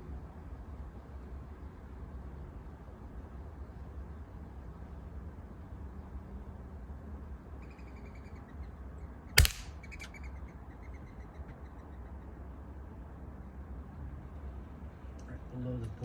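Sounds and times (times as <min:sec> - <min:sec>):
air rifle shot: 0:09.4 - 0:10.1.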